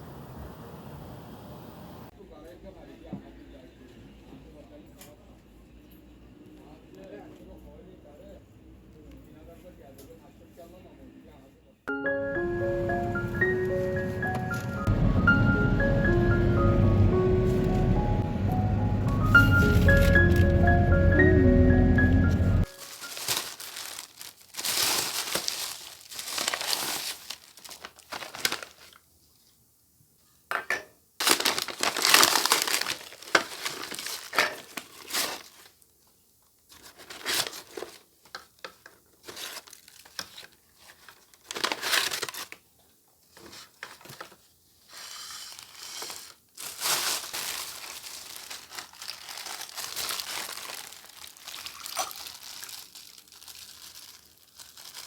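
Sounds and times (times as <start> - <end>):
packaging crinkling and rustling: 19.1 - 20.9, 22.6 - 29.5, 31.2 - 55.0
packaging tearing: 22.6 - 29.0, 31.2 - 35.8, 36.7 - 38.5, 39.2 - 42.6, 45.0 - 55.0.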